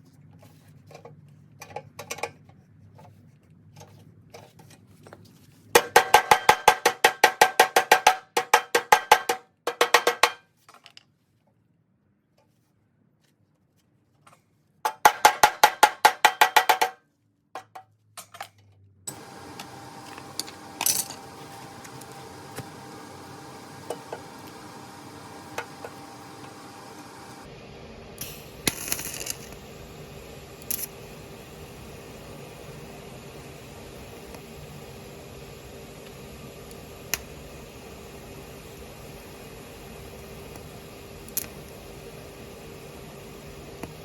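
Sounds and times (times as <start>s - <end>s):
mechanical hum: 18.6s - 44.0s.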